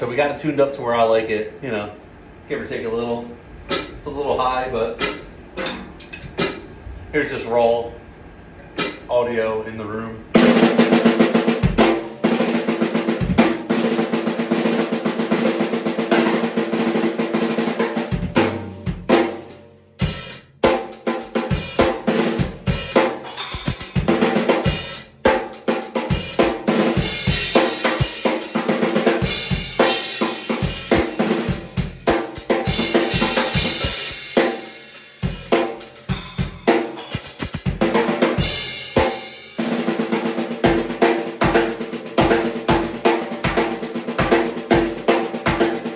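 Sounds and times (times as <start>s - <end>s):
drum kit playing: 3.6s - 4.1s, 4.9s - 6.8s, 8.7s - 9.1s, 10.3s - 45.9s
snare drum: 3.7s - 4.0s, 10.4s - 45.9s
cymbals crashing: 5.0s - 7.0s, 18.3s - 39.7s.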